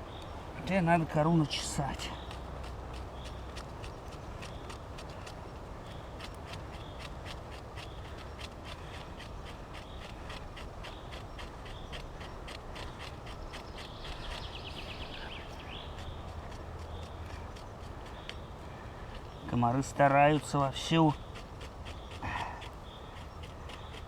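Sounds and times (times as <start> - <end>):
knife scraping bark: 0.6 - 24.0
bird trill: 7.8 - 19.6.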